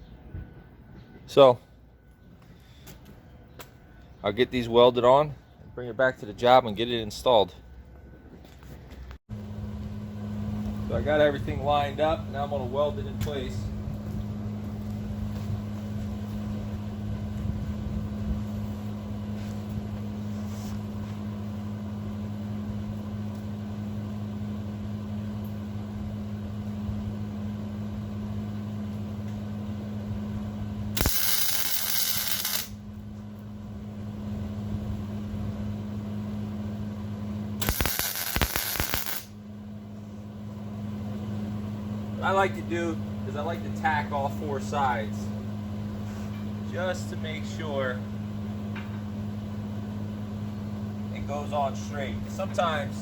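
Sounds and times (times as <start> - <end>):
steady low hum: 0.0 - 53.0
arc welding crackling hiss: 31.0 - 32.8, 37.6 - 39.3.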